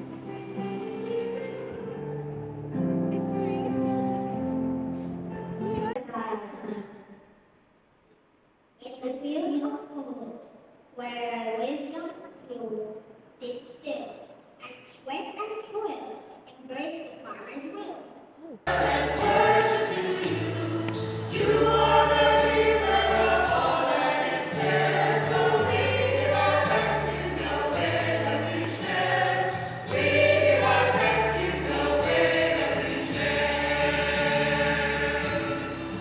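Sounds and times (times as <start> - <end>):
choir singing gospel: 18.7 - 36.0
held bass notes: 18.7 - 36.0.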